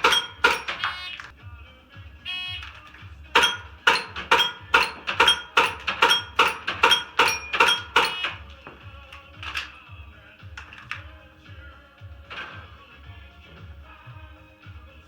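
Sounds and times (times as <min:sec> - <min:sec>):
pellets ringing on steel plates: 0:00.0 - 0:01.2, 0:03.3 - 0:08.5
background music: 0:00.0 - 0:15.0.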